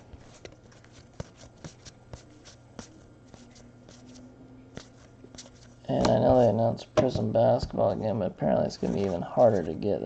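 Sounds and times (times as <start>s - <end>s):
trading cards being flipped: 0.1s - 6.2s.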